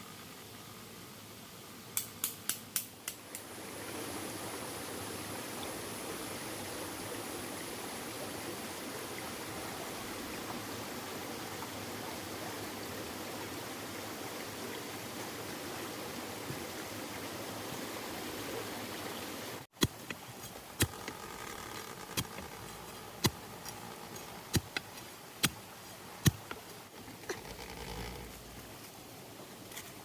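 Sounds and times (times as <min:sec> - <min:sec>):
stream rushing: 0:02.9 - 0:30.0.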